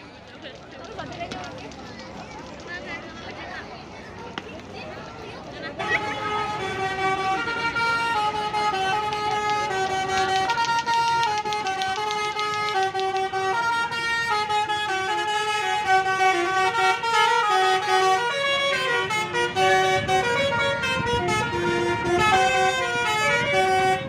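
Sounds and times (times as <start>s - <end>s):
musical bus horn playing a tune: 5.7s - 24.0s.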